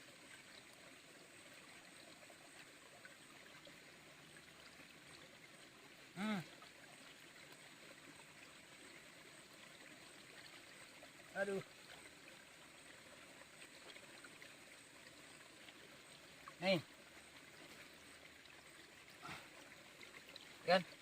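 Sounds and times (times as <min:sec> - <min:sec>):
small river flowing: 0:00.0 - 0:21.0
person exclaiming: 0:06.2 - 0:06.5.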